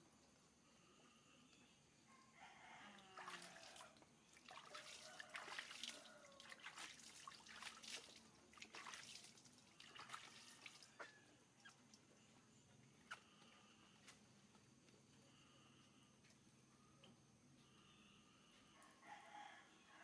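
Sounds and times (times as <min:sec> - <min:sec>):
small water splashes: 0:03.0 - 0:12.0
bath water trickling and dripping: 0:03.1 - 0:12.2.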